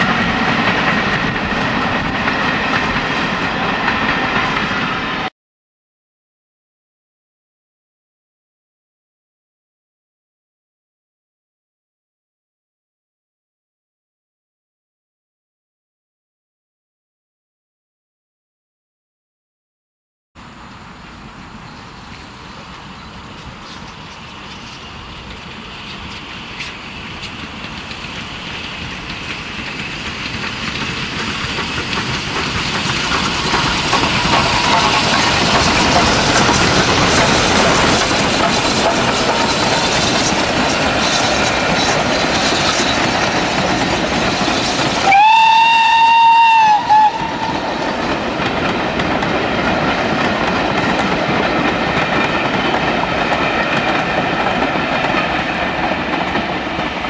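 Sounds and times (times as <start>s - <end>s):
steam train running past: 0.0s - 5.3s, 20.4s - 57.0s
steam locomotive whistle: 44.9s - 48.1s.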